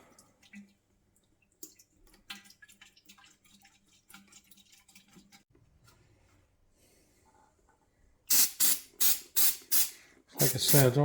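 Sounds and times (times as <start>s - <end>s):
petrol dripping into container: 0.0s - 5.4s.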